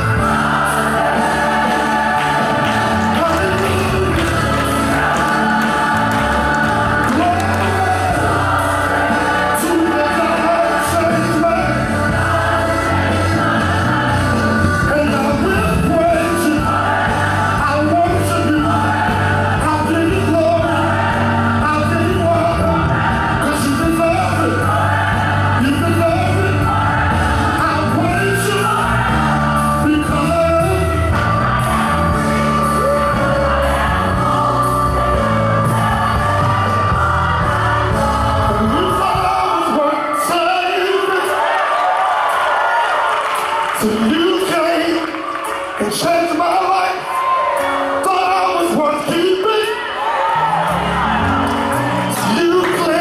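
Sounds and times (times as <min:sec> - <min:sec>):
steady bass line: 0:00.0 - 0:39.3
gospel song with band: 0:00.0 - 0:53.0.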